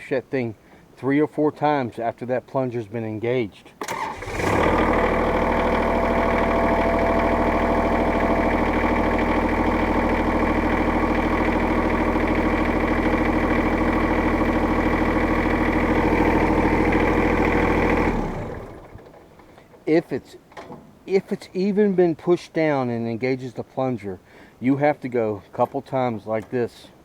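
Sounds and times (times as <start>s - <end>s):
diesel tractor engine idling: 3.9s - 19.1s.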